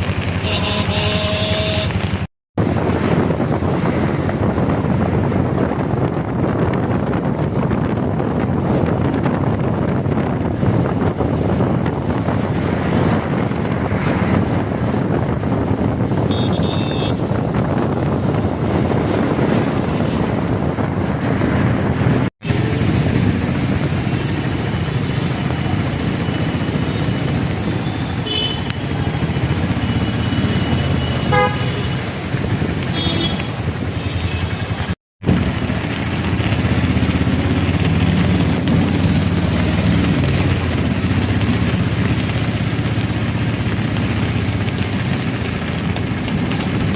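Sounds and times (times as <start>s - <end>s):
road traffic engines: 0.0s - 46.9s
car horn honks: 0.4s - 2.0s, 16.3s - 17.2s, 27.9s - 28.9s, 31.2s - 32.0s, 32.9s - 34.7s.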